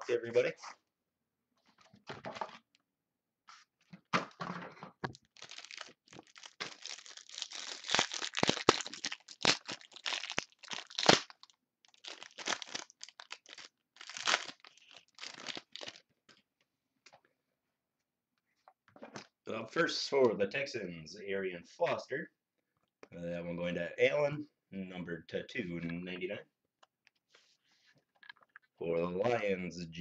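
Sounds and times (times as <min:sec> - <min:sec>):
plastic wrapping tearing and crinkling: 0:05.1 - 0:16.0.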